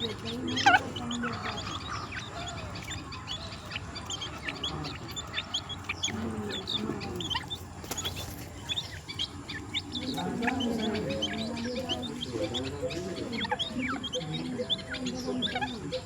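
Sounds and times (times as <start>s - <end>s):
chicks peeping: 0.0s - 16.0s
lower clucking calls: 0.0s - 16.0s.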